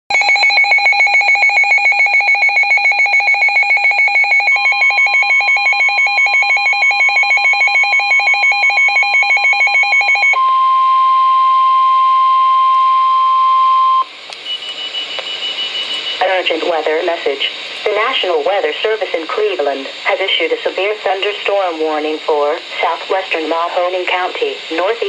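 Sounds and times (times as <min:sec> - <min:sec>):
pulsing two-tone alert alarm: 0:00.1 - 0:16.4
steady single-pitch warning tone: 0:00.1 - 0:20.2.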